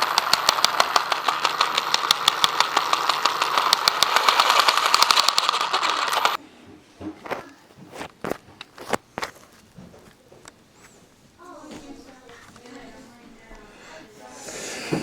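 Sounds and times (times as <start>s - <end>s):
electric motor whine: 0.0s - 6.4s
rapid gearbox clicking: 0.0s - 6.4s.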